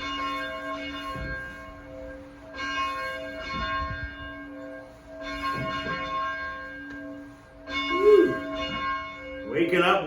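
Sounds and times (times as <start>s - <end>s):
church bell ringing: 0.0s - 10.0s.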